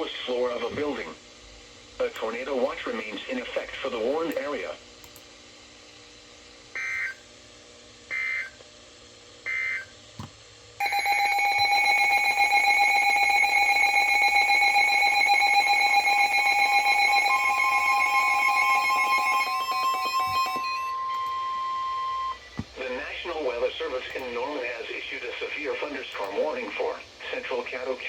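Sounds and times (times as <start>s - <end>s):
buzzy digital bursts: 10.8s - 21.1s
higher electronic tone: 10.8s - 22.6s
steady electronic alert tone: 10.8s - 22.6s.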